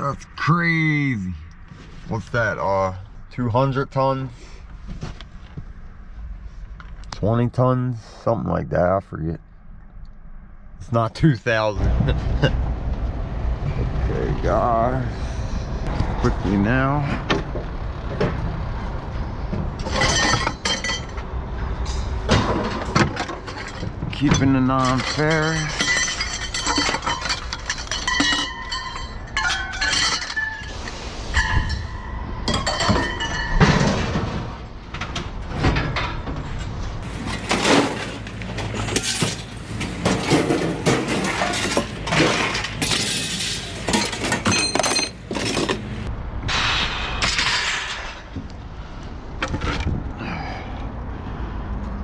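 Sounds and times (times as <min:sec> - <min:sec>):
scrap metal crashing onto pile: 0:19.8 - 0:21.1, 0:21.8 - 0:45.9.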